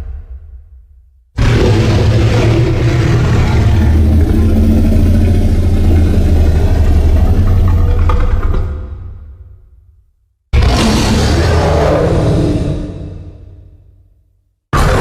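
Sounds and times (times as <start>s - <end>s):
loud steady low rumble: 1.4s - 9.7s.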